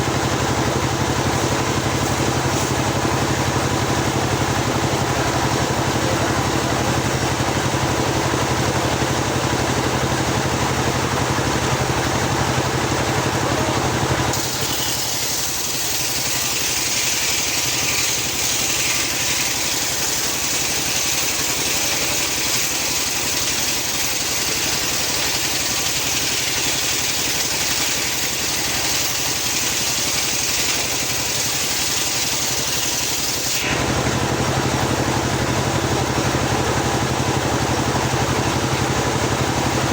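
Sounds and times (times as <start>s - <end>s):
saw cutting into log: 0.0s - 6.1s, 14.0s - 35.0s
circular saw running: 0.0s - 39.9s.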